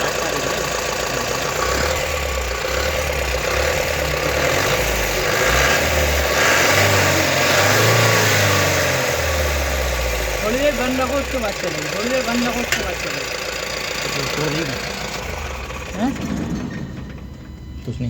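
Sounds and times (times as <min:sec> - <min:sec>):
diesel engine running: 0:00.0 - 0:18.0.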